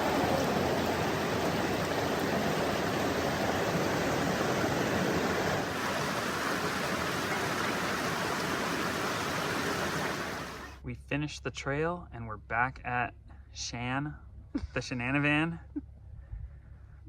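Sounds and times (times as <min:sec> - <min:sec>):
rushing creek water: 0:00.0 - 0:10.8.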